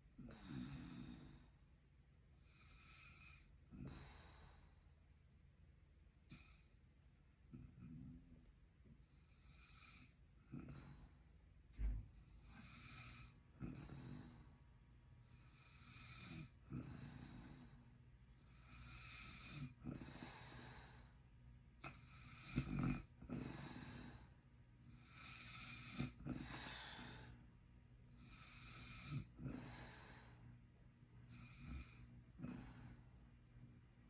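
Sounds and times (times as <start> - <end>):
man snoring: 0.2 - 1.4, 2.4 - 4.1, 9.1 - 11.0, 12.2 - 14.3, 15.3 - 17.5, 18.4 - 20.8, 21.9 - 24.2, 24.9 - 27.4, 28.1 - 30.0, 31.3 - 32.8.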